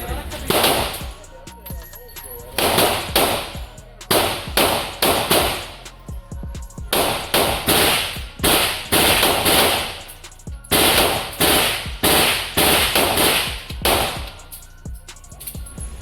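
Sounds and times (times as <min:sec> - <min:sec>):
rapid gunshots: 0:00.4 - 0:01.2, 0:02.6 - 0:05.8, 0:07.0 - 0:10.1, 0:10.7 - 0:14.4.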